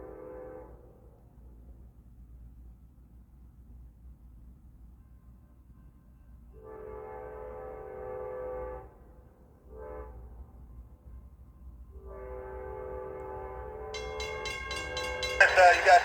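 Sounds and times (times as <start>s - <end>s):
distant locomotive air horn: 6.6s - 9.0s, 9.7s - 10.5s, 12.0s - 16.0s.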